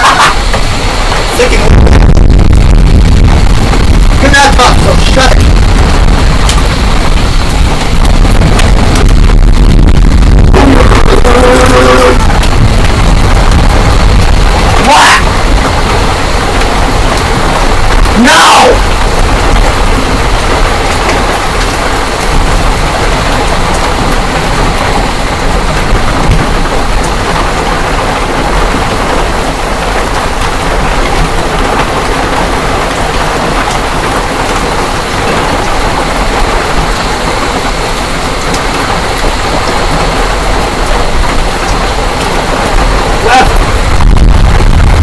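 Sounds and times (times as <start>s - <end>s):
heavy hail and rain pelting: 0.0s - 45.0s.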